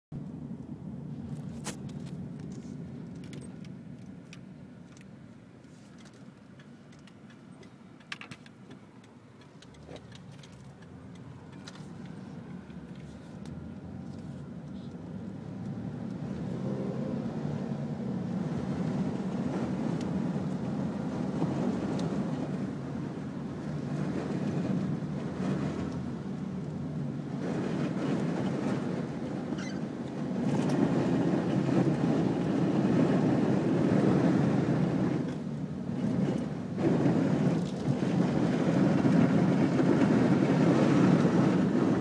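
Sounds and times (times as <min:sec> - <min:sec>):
car engine rumble: 0:00.1 - 0:42.0
small clicks and rattles: 0:05.7 - 0:13.1.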